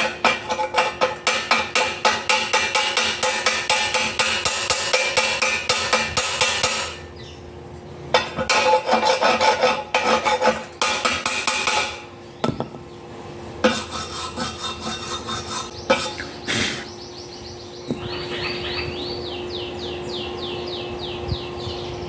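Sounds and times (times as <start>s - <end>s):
wire brush scrubbing metal: 0.0s - 7.0s, 8.1s - 12.1s, 13.6s - 16.3s
sharp metal knocks: 0.0s - 7.1s, 8.1s - 12.8s
steady hum: 0.0s - 22.0s.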